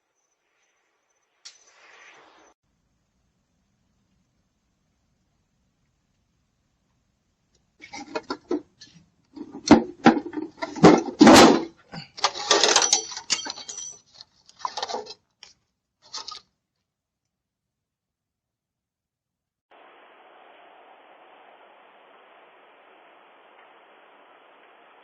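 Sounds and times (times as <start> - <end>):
hard objects knocking and rattling: 7.8 - 15.2.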